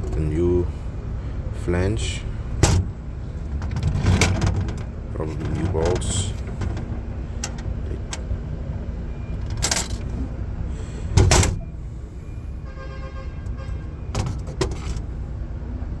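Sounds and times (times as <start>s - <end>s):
engine rumbling: 0.0s - 16.0s
metallic clanks and knocks: 2.6s - 8.3s, 9.4s - 10.3s, 11.2s - 11.7s, 14.1s - 15.1s.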